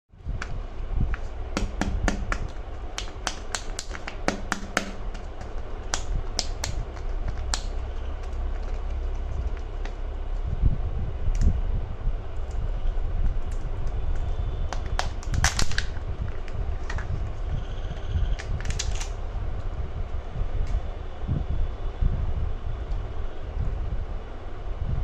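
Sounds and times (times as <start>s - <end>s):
steady low rumble: 0.1s - 25.0s
plastic eggs clicking and snapping: 0.4s - 10.0s, 13.4s - 17.2s, 18.3s - 19.2s.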